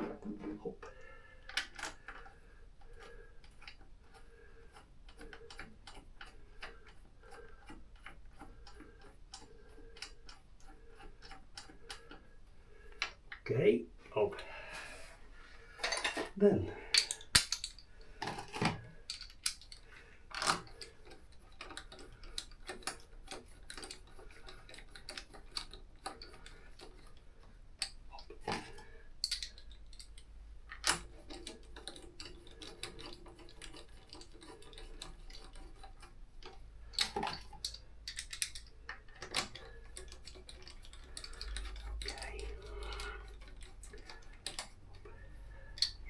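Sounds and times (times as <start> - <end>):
metallic clicks and taps: 16.9 - 27.1, 27.8 - 46.0.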